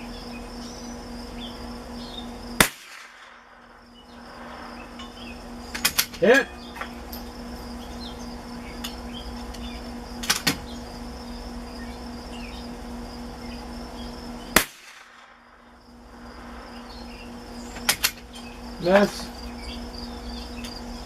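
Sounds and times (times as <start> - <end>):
insect buzz: 0.0 - 21.0
rifle shot: 2.6 - 4.8, 14.5 - 15.7.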